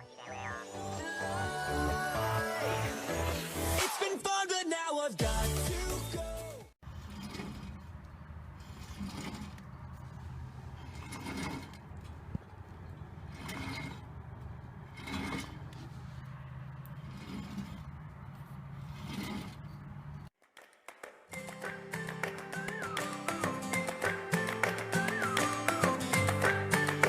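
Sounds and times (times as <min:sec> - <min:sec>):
wheel bearing scraping: 0:06.8 - 0:20.3.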